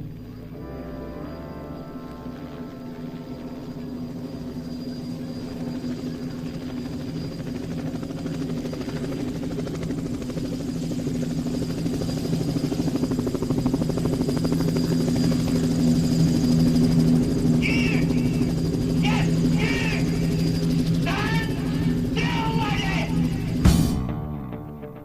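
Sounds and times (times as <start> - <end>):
steady low drone: 0.0 - 25.0
helicopter rotor chopping: 2.3 - 24.1
voice calling out: 17.6 - 23.6.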